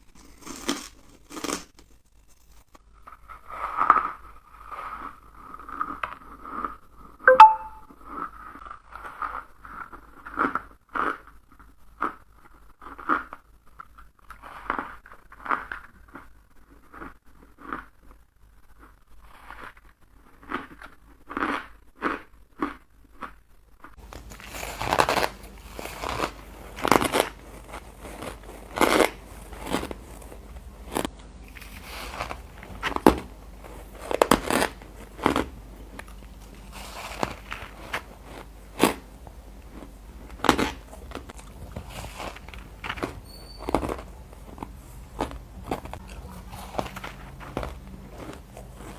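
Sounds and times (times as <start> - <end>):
person crunching ice: 0.1 - 1.7, 24.0 - 35.6
low background hum: 24.0 - 48.9.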